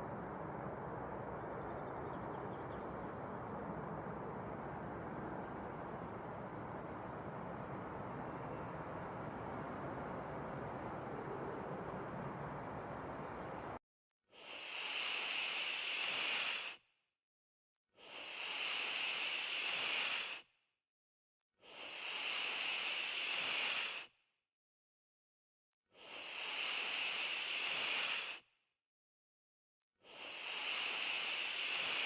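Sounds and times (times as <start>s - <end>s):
drawn-out hiss: 18.0s - 20.4s, 21.7s - 24.0s, 26.0s - 28.4s, 30.1s - 32.0s.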